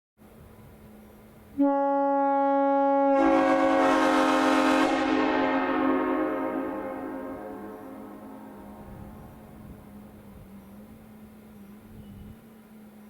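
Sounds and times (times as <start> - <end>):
train horn chord: 1.6 - 10.5.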